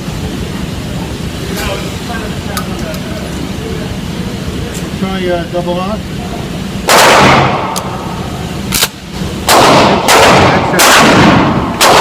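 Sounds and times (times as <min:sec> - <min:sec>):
shotgun shots: 0:06.9 - 0:07.8, 0:08.7 - 0:12.0.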